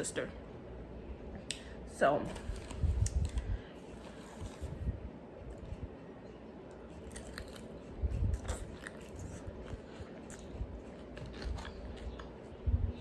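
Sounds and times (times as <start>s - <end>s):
close chewing and biting: 6.7s - 13.0s.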